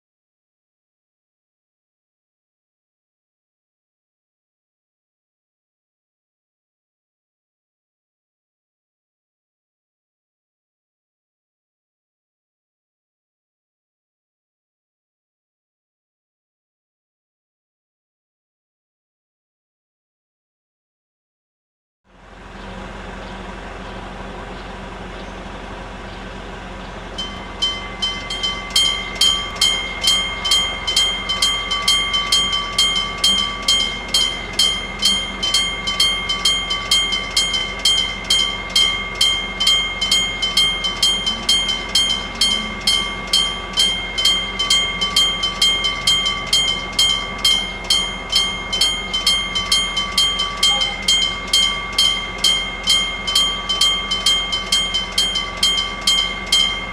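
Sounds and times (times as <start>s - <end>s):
level crossing warning bell: 22.3s - 56.9s.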